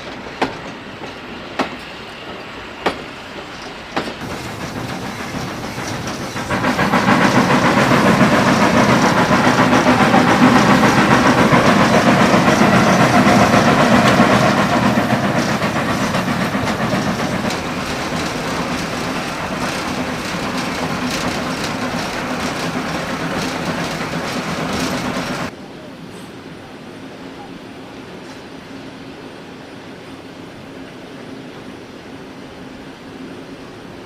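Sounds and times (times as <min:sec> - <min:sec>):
train clattering: 0:00.0 - 0:25.5
steam hiss: 0:00.3 - 0:25.5.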